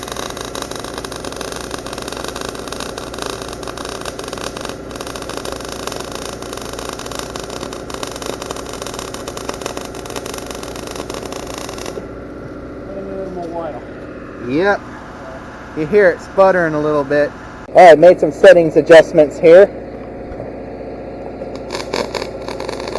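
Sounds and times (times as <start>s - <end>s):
welding arc crackling: 0.0s - 12.4s, 17.9s - 22.9s
welder engine running: 0.0s - 22.9s.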